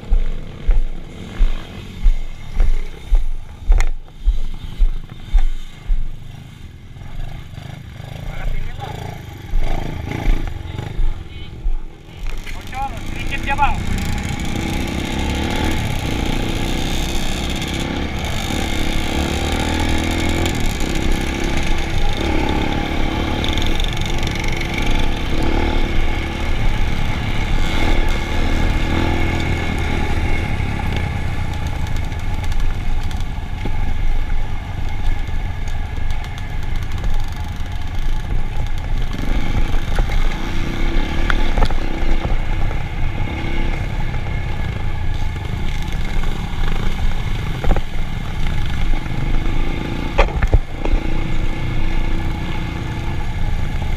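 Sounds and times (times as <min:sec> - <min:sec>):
vehicle engine running: 0:00.0 - 0:06.2.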